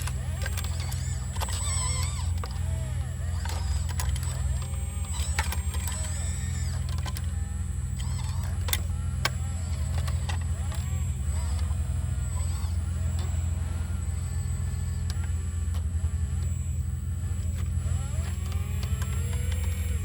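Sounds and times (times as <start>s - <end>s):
excavator diesel engine running: 0.0s - 20.0s
hydraulic whine: 0.0s - 20.0s
sharp clicks and knocks: 17.3s - 20.0s.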